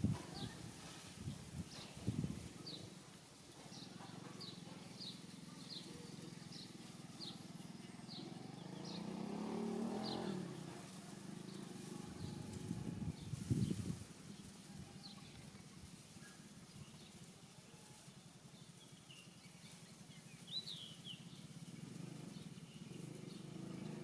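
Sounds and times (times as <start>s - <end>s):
motor vehicle passing: 3.7s - 14.6s, 20.8s - 24.0s.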